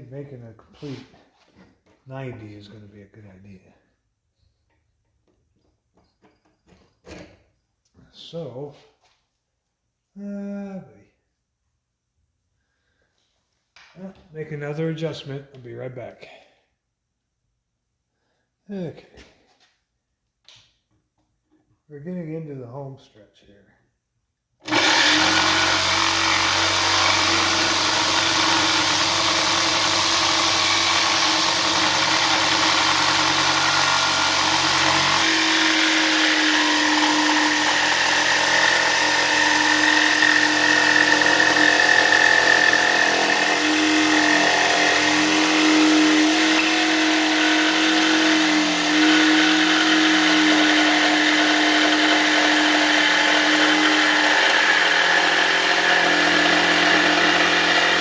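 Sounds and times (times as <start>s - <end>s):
electric power saw whining: 24.6s - 58.0s.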